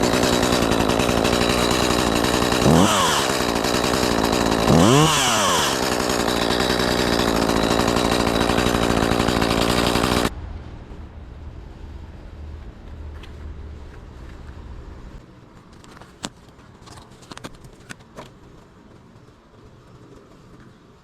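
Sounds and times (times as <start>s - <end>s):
chainsaw revving: 0.0s - 10.3s.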